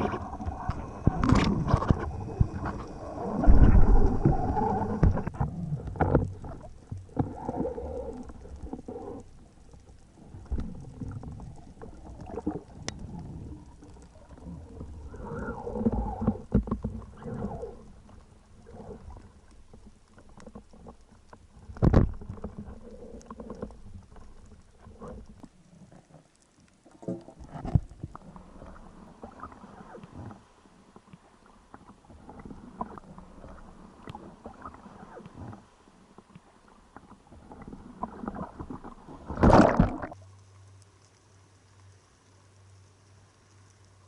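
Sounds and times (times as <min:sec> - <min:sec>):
underwater water noise: 0:00.0 - 0:44.0
sharp knocks underwater: 0:38.6 - 0:40.2.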